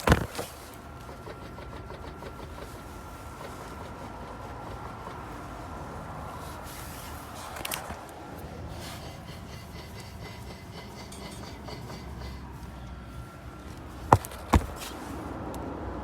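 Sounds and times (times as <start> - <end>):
faint steady whine: 0.0 - 16.0.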